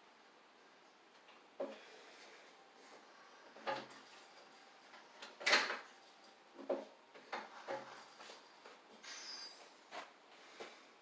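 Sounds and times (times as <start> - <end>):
knocks and clacks at a workbench: 6.6 - 7.9.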